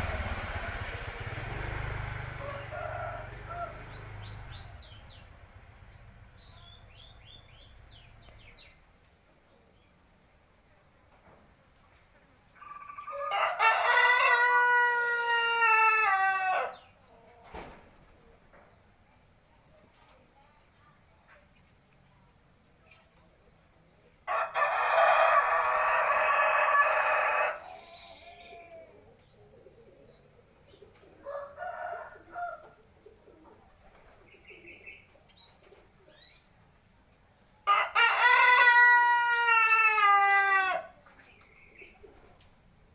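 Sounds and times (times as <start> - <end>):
rooster crowing: 2.3 - 4.0, 12.6 - 16.8, 24.2 - 28.2, 31.2 - 32.7, 37.6 - 41.0.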